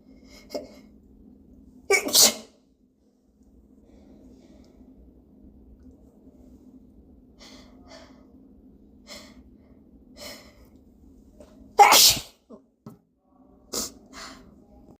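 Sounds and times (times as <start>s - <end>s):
person sneezing: 1.9s - 2.5s, 11.8s - 12.4s
person's hitching breaths: 7.4s - 8.4s, 13.7s - 14.6s.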